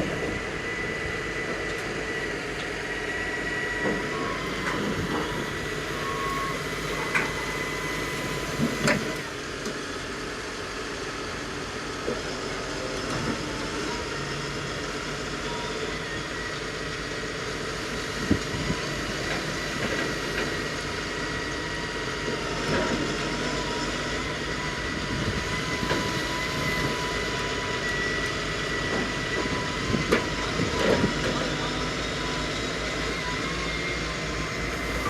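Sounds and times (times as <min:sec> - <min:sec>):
diesel machinery running: 0:00.0 - 0:35.0
thin high whine: 0:34.7 - 0:35.0.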